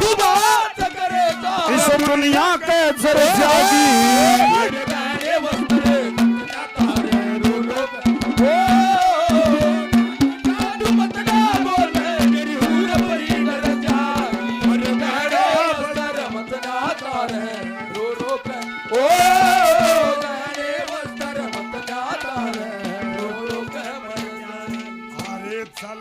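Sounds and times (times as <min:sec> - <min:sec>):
wavering melody: 0:03.2 - 0:04.8, 0:05.5 - 0:15.9
hand drum strokes: 0:03.2 - 0:16.3.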